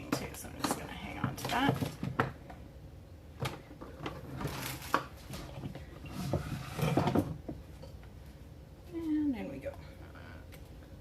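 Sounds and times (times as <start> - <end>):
plastic scraping and rustling: 3.5 - 7.4.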